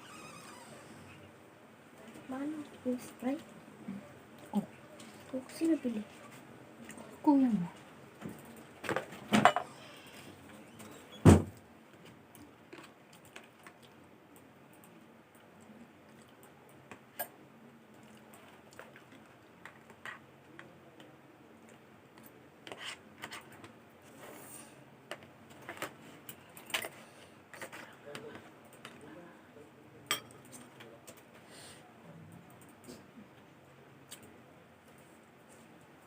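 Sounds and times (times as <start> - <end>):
utensils and tableware clinking: 30.1 - 30.6.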